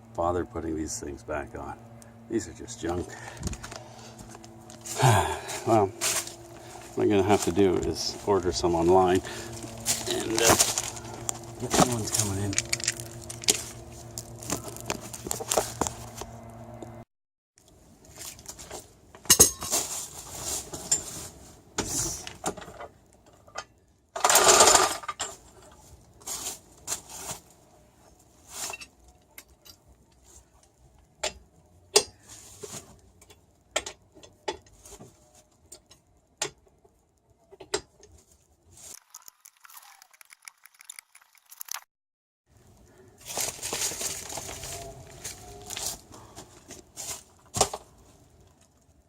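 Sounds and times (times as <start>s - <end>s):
metal tools clinking and rattling: 9.3s - 15.8s.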